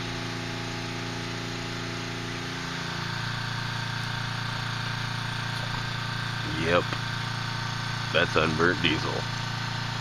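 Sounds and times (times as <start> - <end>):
engine running: 0.0 - 10.0.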